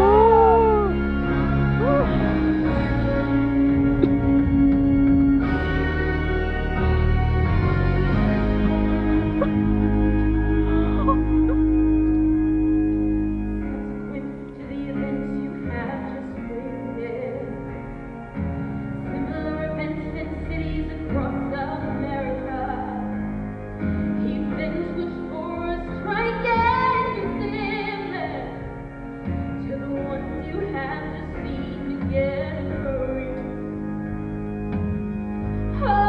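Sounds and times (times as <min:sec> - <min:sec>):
sustained chords: 0:00.0 - 0:14.6.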